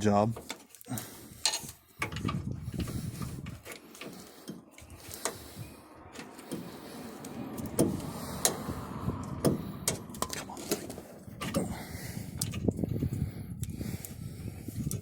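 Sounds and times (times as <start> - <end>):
metal rubbing and scraping: 1.2 - 13.2.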